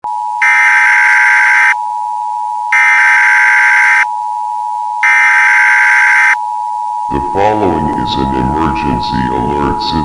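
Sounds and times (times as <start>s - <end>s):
harsh buzzer blaring: 0.0s - 1.8s, 2.7s - 4.1s, 5.0s - 6.4s
steady attention tone: 0.0s - 10.0s.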